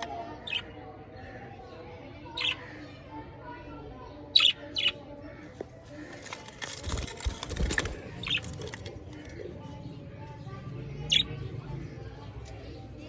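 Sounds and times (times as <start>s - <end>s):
rustling and clattering: 5.9s - 9.4s.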